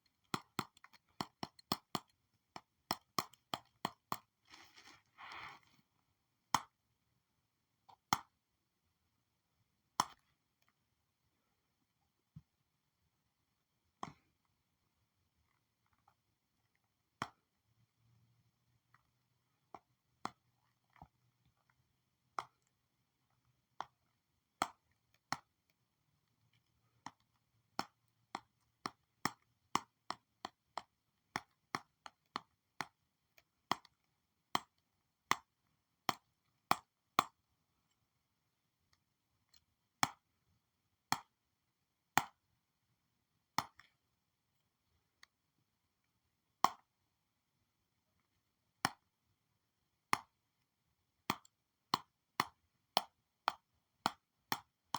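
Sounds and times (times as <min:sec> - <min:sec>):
stylus tapping on drawing tablet: 0:00.0 - 0:04.3.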